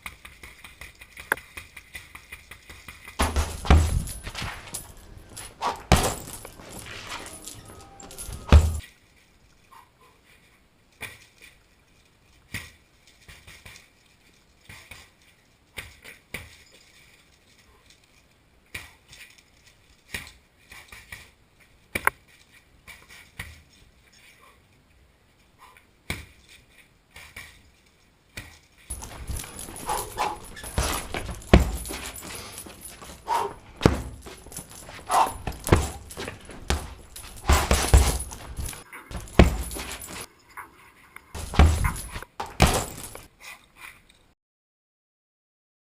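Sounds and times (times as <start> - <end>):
punches on heavy bag: 3.2 - 8.8, 28.9 - 40.3, 41.4 - 43.3.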